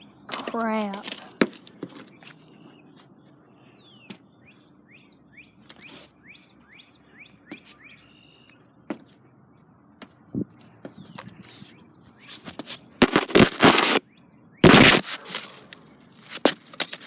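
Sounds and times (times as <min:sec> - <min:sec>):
birds chirping: 0:00.0 - 0:16.1.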